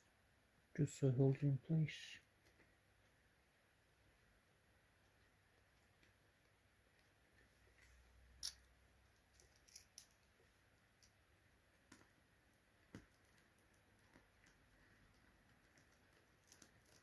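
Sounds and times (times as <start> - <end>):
small screws clicking and tapping: 8.2 - 12.2, 12.8 - 17.0.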